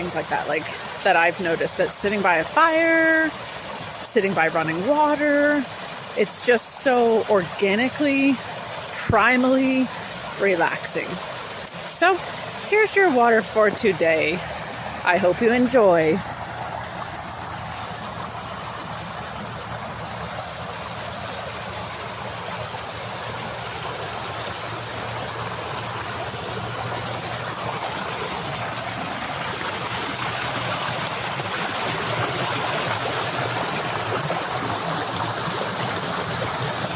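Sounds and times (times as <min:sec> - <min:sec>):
waterfall rushing: 0:00.0 - 0:36.9.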